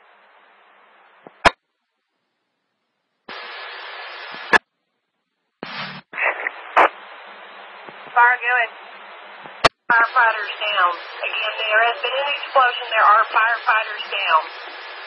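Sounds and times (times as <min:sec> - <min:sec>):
radio static: 0:03.3 - 0:04.6, 0:05.6 - 0:15.0.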